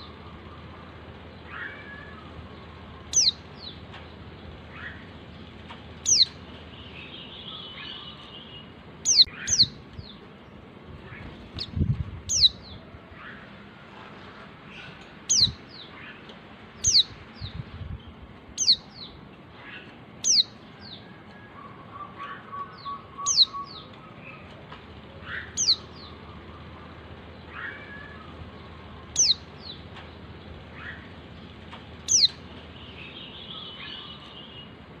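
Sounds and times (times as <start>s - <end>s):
bird high calls sweeping downward: 1.4s - 3.8s, 6.0s - 6.3s, 19.7s - 24.4s, 25.2s - 26.8s, 27.4s - 29.5s, 32.1s - 32.4s.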